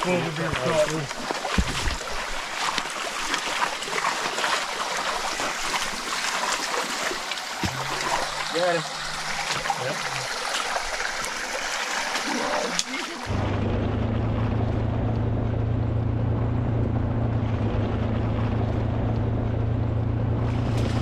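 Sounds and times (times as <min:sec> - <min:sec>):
stream running over rocks: 0:00.0 - 0:13.4.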